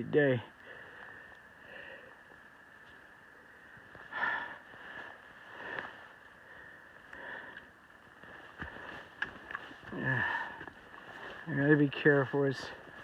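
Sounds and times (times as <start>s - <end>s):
person breathing hard and sniffing: 4.0s - 7.8s.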